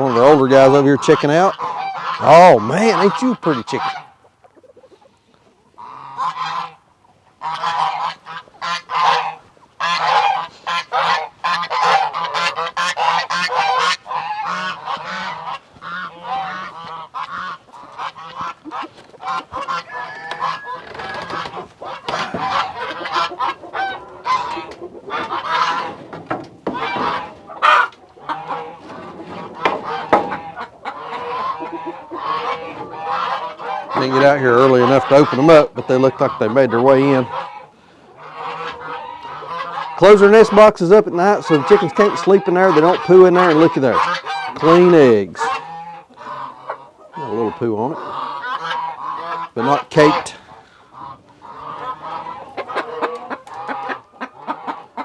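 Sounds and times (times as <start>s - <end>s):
geese honking: 0.0s - 55.0s.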